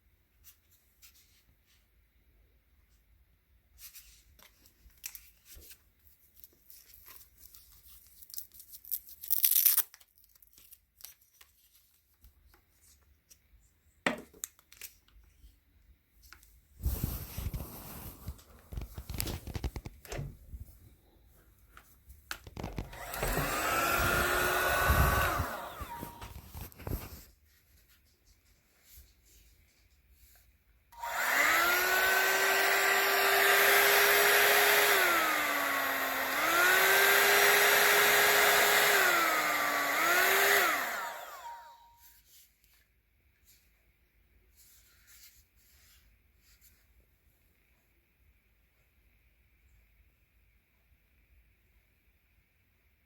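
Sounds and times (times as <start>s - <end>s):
rustling: 16.2s - 30.5s
hair dryer brush motor blowing: 22.8s - 26.6s, 31.0s - 41.9s.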